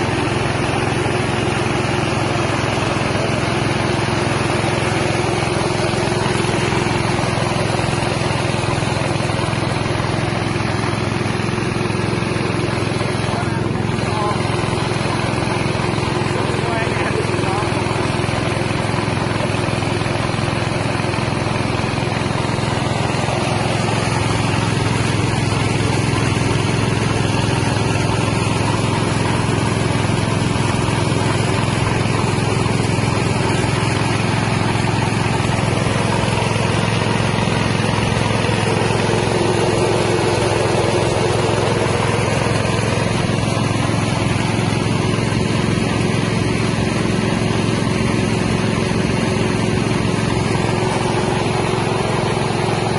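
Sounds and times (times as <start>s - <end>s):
rice milling machine engine running: 0.0s - 52.9s.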